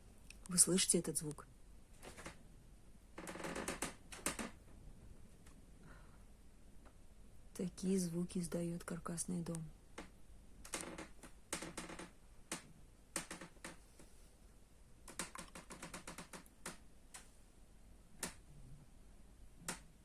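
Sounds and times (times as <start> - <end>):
house creaking and cracking: 2.0 - 2.4, 3.1 - 4.8, 10.0 - 14.0, 15.0 - 16.8.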